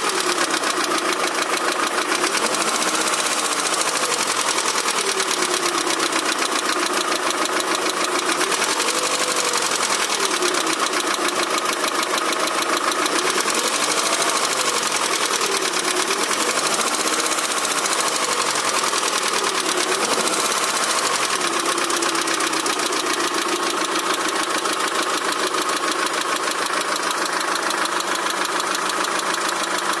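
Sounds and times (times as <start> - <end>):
car engine running: 0.0 - 30.0.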